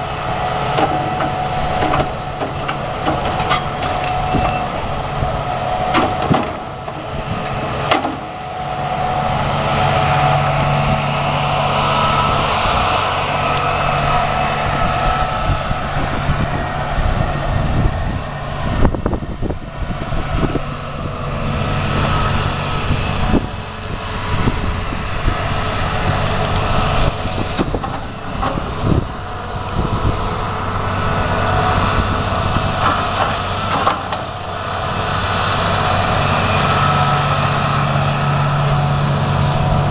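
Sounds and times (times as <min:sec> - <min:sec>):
diesel engine working: 0:00.0 - 0:39.9
logs knocking onto truck: 0:00.7 - 0:04.6, 0:05.9 - 0:07.0, 0:07.9 - 0:08.3, 0:32.8 - 0:34.3.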